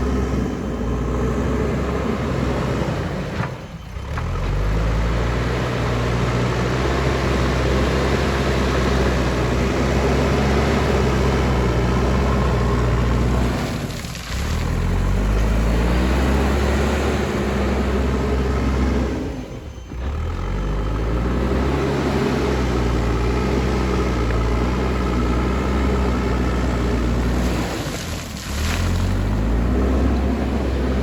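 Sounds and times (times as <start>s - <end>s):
diesel engine under load: 0.0s - 31.0s.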